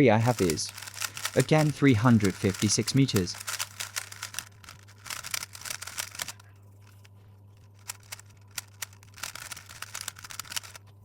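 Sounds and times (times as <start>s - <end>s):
speed cube clicking and scraping: 0.2s - 10.8s.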